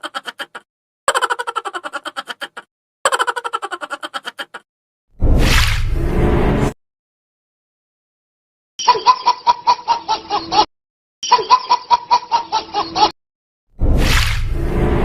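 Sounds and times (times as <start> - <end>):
cackling laugh: 0.0 - 4.6, 8.8 - 13.2
whooshing transition effect: 13.8 - 15.0.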